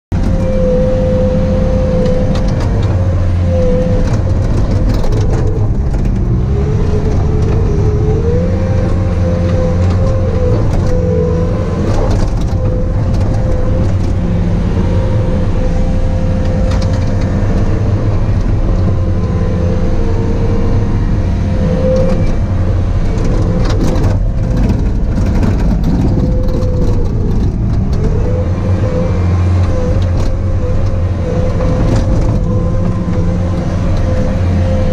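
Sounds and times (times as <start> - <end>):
diesel engine running: 0.1 - 34.9
wavering machine whine: 0.2 - 34.9.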